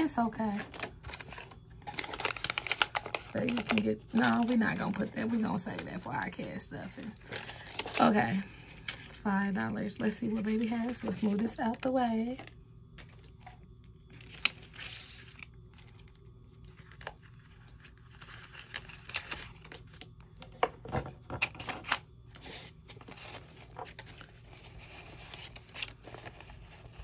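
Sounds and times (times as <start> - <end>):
paper rustling and crinkling: 0.4 - 9.3, 9.9 - 11.8, 12.4 - 27.0.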